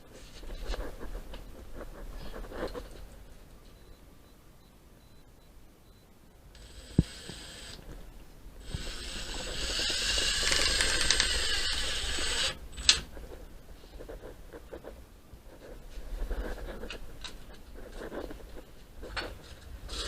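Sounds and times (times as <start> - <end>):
small power tool motor running: 8.6 - 12.6.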